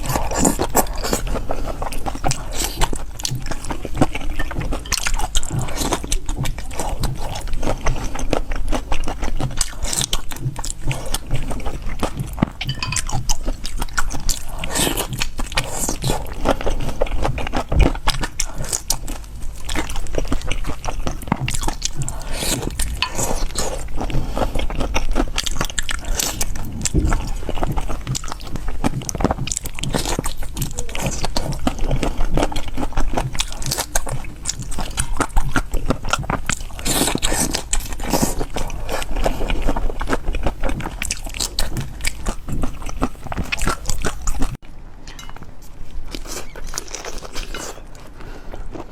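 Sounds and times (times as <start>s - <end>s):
person chewing crunchy food: 0.0s - 48.9s.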